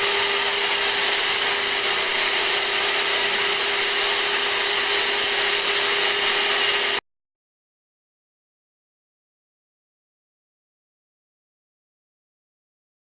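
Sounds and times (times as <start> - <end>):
router spindle hum: 0.0 - 7.0.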